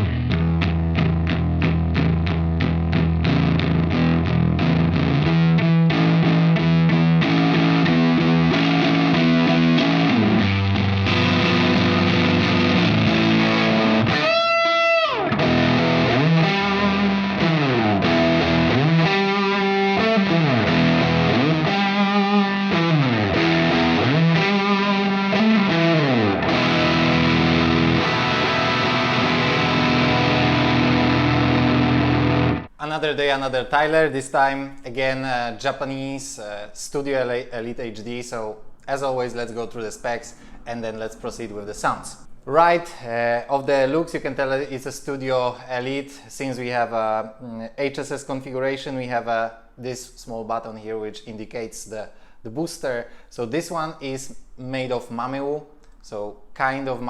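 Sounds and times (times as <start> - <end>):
distorted electric guitar riff: 0.0 - 32.8.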